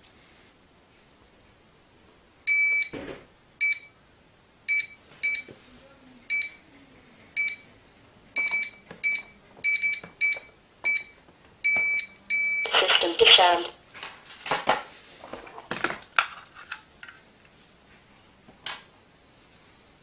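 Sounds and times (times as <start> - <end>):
keypad beeping: 8.4 - 13.7.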